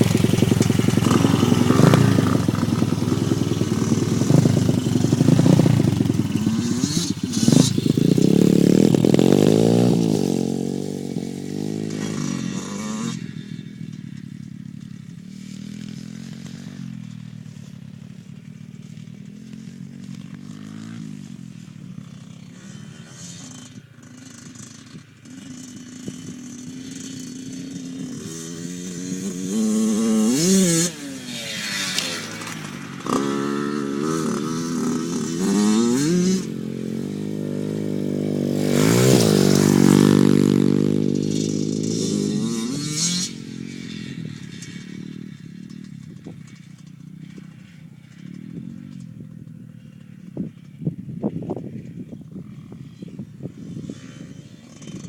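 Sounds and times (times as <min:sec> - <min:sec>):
dirt bike engine accelerating: 0:00.0 - 0:55.0.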